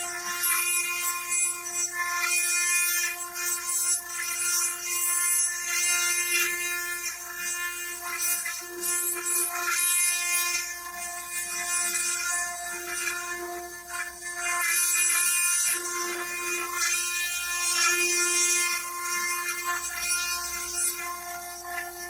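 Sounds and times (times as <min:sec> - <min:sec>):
cutter grinding into stone: 0:00.0 - 0:22.0.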